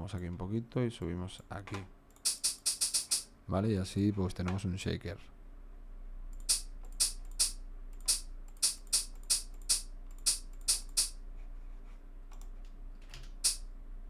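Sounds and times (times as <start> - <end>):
faint steady hum: 0.0 - 14.0
shaker-like sampled hits: 2.3 - 3.3, 6.5 - 11.2.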